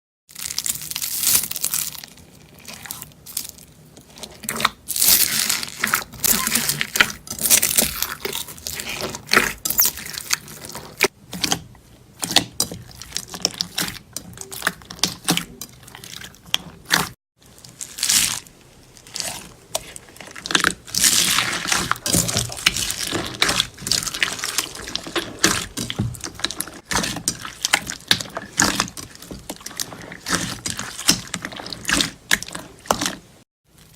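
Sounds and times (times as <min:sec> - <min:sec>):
slime squished with crackles and pops: 0:04.4 - 0:11.6.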